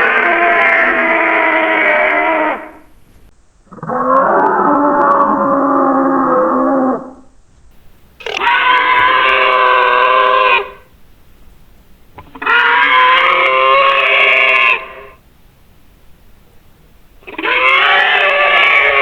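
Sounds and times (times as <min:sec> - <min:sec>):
dinosaur creature calls: 0:00.0 - 0:02.9, 0:03.7 - 0:07.3, 0:08.2 - 0:10.9, 0:12.2 - 0:15.2, 0:17.2 - 0:19.0.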